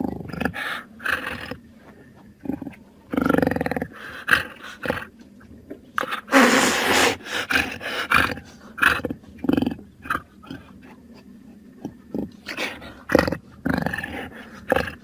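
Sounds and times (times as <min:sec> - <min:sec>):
jaguar grunts and growls: 0:00.0 - 0:05.2, 0:05.8 - 0:15.0
jaguar snarling roar: 0:02.4 - 0:05.1, 0:12.2 - 0:15.0.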